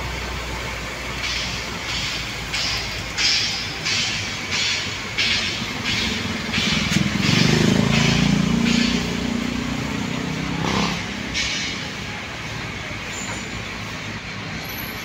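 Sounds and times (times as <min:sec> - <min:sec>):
vehicle engine passing: 0:05.1 - 0:13.1.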